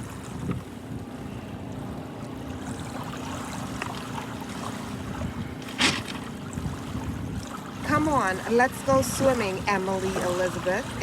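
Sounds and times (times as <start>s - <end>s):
wind on microphone: 0.0s - 2.0s, 4.8s - 11.0s.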